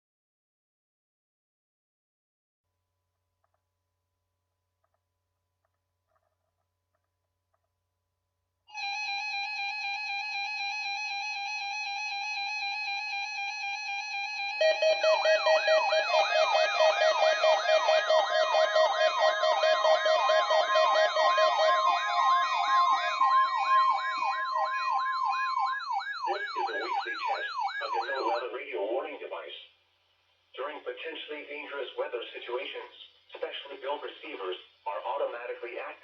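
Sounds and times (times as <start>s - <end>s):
electronic siren sweep: 8.7s - 28.6s
warbling electronic alarm tone: 8.7s - 28.6s.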